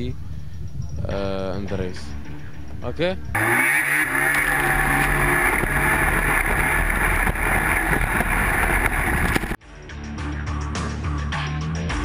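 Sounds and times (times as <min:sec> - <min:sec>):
wind on microphone: 0:00.0 - 0:01.4, 0:05.0 - 0:09.6
jet ski engine running hard: 0:03.4 - 0:09.6.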